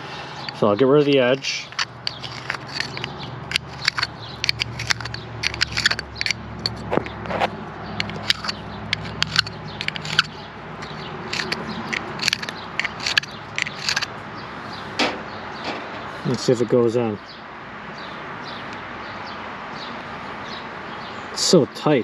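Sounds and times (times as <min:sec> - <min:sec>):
scraping clicks on copper pipe: 0:00.4 - 0:14.1.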